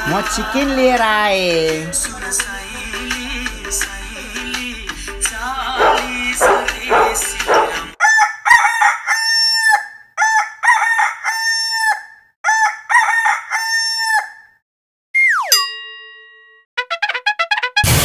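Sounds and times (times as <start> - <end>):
rooster crowing: 5.8 - 14.6.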